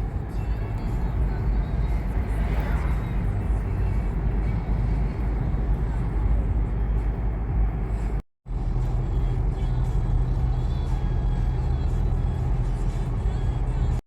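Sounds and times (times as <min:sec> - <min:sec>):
van engine and road rumble: 0:00.0 - 0:14.0.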